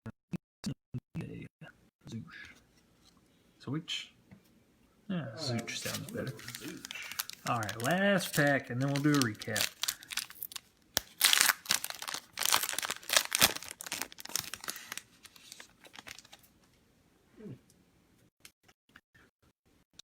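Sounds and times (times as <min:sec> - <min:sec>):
wrapper tearing and crinkling: 0:05.7 - 0:16.5.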